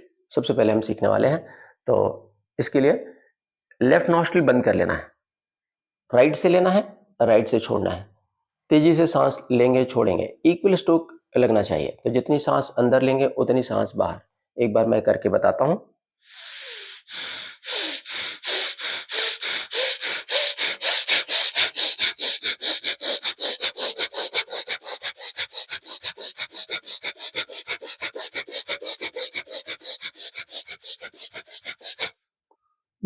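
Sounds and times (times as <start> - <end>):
forceful nasal breathing: 16.2 - 32.2.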